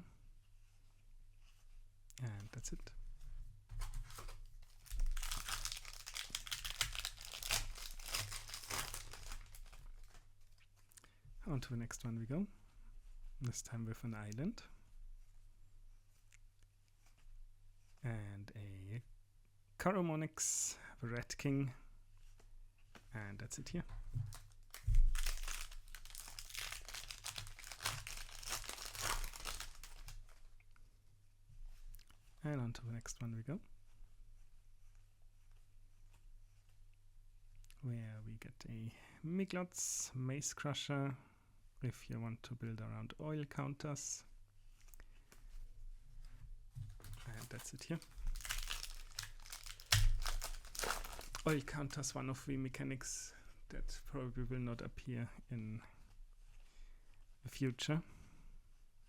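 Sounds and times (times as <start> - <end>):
plastic foil wrapper crinkling and tearing: 4.1 - 10.2, 24.3 - 30.4, 47.0 - 51.8.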